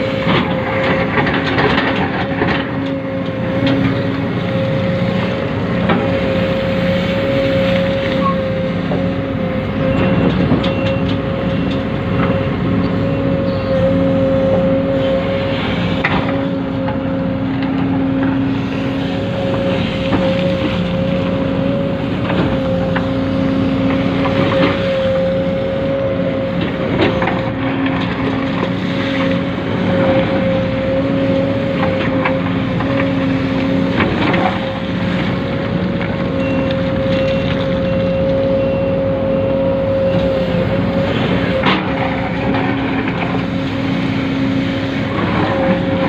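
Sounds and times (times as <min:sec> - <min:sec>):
low tone: 0:05.9 - 0:15.4.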